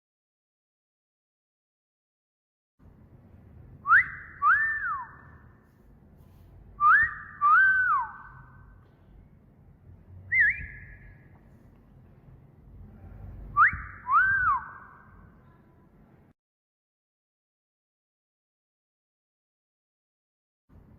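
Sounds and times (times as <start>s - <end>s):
wolf whistle: 3.8s - 5.4s, 6.8s - 8.7s, 10.3s - 11.2s, 13.5s - 15.1s
short rising whistle: 3.8s - 5.5s, 6.8s - 8.7s, 10.3s - 11.2s, 13.1s - 15.1s.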